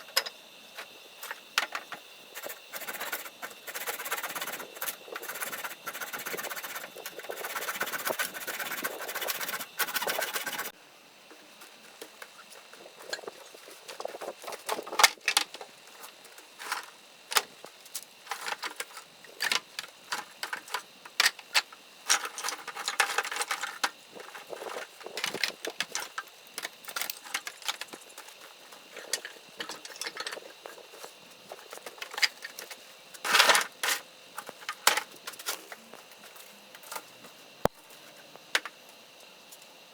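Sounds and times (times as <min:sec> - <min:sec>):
hand saw cutting branch: 0:02.4 - 0:10.7.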